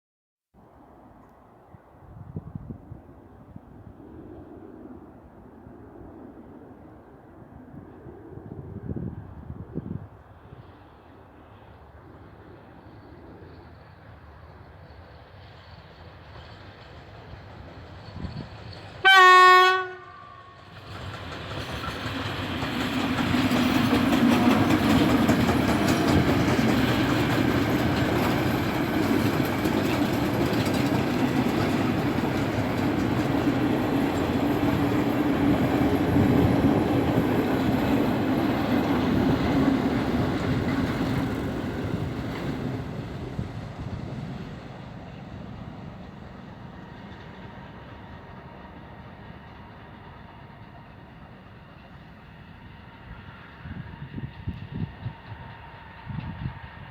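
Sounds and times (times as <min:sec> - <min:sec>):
train wheels and wagons running: 0:13.0 - 0:56.9
locomotive horn blast: 0:19.0 - 0:20.7.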